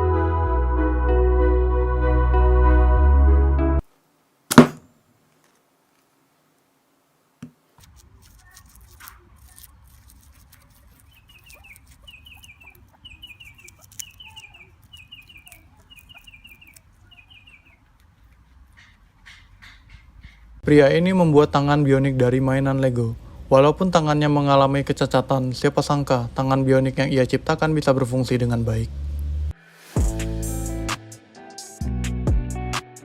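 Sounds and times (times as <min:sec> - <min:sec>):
faint outdoor background: 0:00.0 - 0:33.0
bird chirping: 0:10.6 - 0:20.6.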